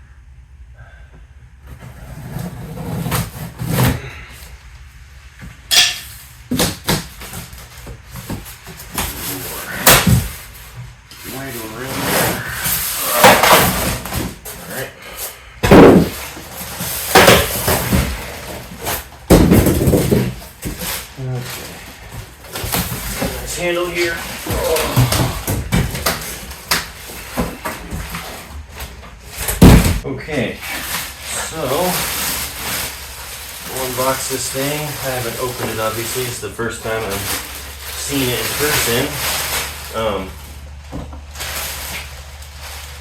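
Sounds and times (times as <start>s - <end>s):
cardboard rubbing and tearing: 1.7s - 4.2s, 7.2s - 14.8s, 30.6s - 43.0s.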